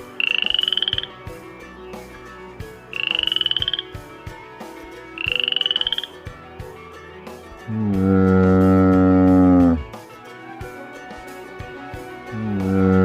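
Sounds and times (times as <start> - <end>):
frog calling in pulsed trills: 0.0 - 1.3, 2.9 - 4.0, 5.2 - 6.3.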